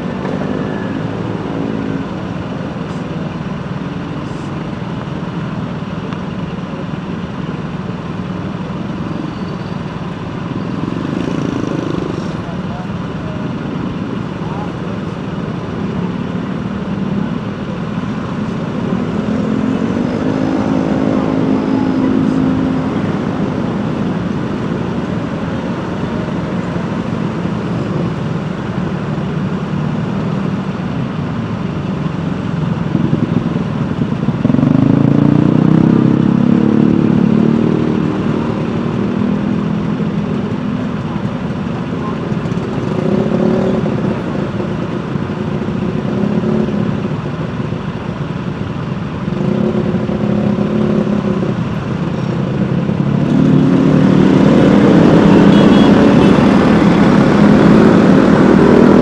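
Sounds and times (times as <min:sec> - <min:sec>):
traffic engine and tyre noise: 0:00.0 - 0:59.0
engine revving: 0:52.4 - 0:59.0.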